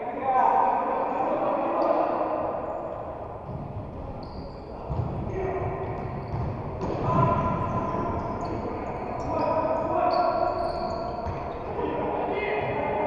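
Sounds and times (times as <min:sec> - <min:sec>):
distant players' voices: 0:00.8 - 0:13.0
sneaker squeaks: 0:02.7 - 0:13.0.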